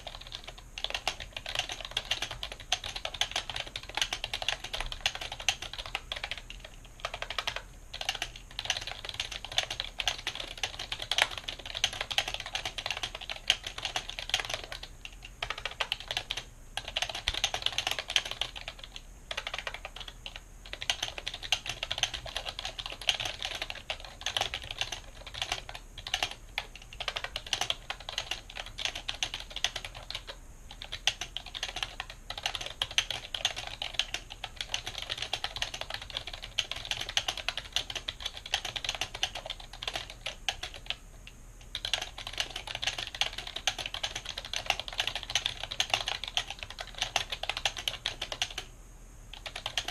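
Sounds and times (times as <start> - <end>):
mechanical keyboard typing: 0.0 - 41.0, 41.7 - 48.7, 49.3 - 49.9.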